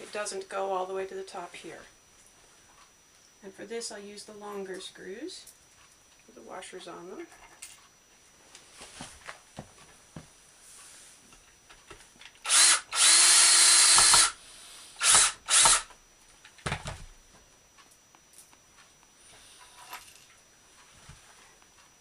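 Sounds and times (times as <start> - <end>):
power drill driving screw: 12.4 - 14.4, 15.0 - 16.0.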